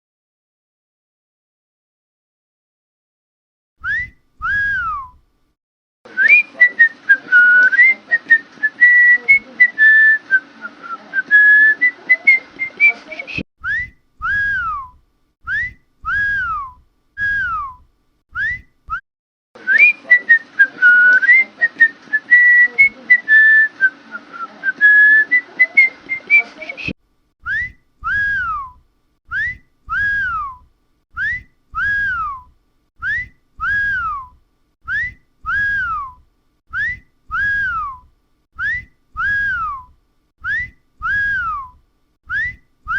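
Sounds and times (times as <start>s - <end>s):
continuous warbling whistle: 13.6s - 18.8s, 27.4s - 42.9s.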